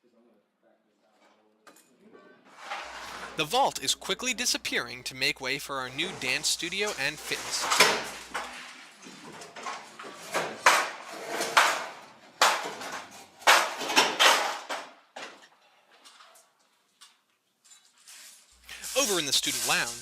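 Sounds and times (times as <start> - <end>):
demolition strikes on masonry: 7.6 - 15.3.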